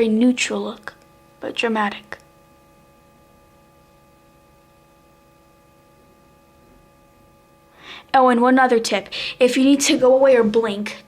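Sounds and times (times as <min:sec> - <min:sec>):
faint electrical hum: 0:00.0 - 0:11.0.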